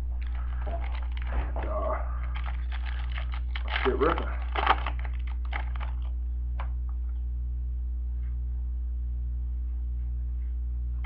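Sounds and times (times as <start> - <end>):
electrical mains hum: 0.0 - 11.0.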